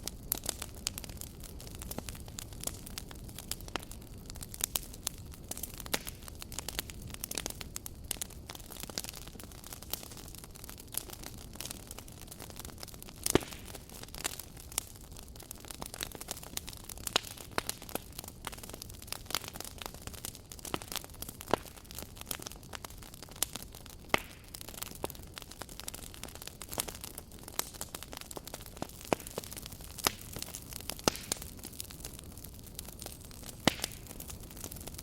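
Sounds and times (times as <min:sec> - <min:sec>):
campfire crackling and popping: 0:00.0 - 0:35.0.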